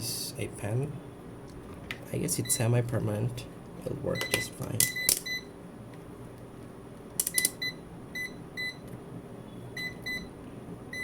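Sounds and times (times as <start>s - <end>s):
multimeter high-pitched beeps: 4.1s - 5.5s, 7.3s - 8.8s, 9.8s - 10.3s.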